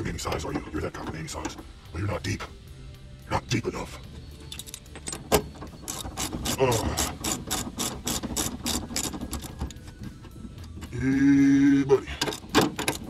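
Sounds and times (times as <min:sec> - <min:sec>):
ratchet wrench clicking: 0:04.5 - 0:05.3, 0:05.9 - 0:09.6, 0:12.2 - 0:13.0.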